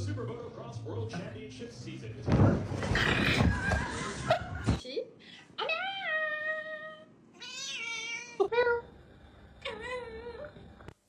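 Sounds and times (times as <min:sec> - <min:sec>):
cat meowing: 0:07.4 - 0:08.5.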